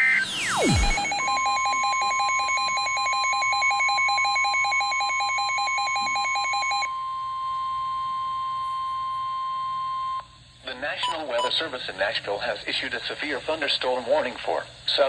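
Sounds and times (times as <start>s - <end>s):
rapid pulsing beep: 0.0s - 6.9s
steady warning alarm tone: 0.0s - 10.2s.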